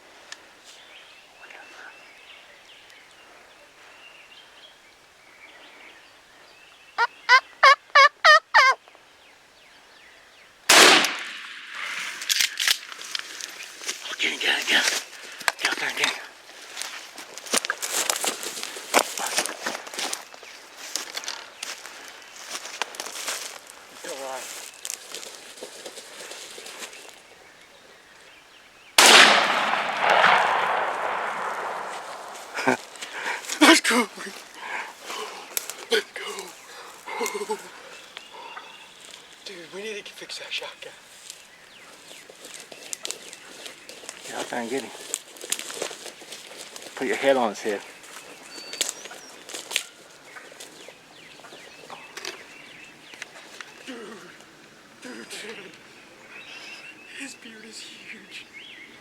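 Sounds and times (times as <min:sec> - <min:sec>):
turkey yelping: 0:07.0 - 0:08.8
shotgun blast with echo: 0:10.7 - 0:12.1, 0:29.0 - 0:32.7
rustling: 0:11.1 - 0:27.3, 0:29.0 - 0:38.2, 0:41.0 - 0:54.6.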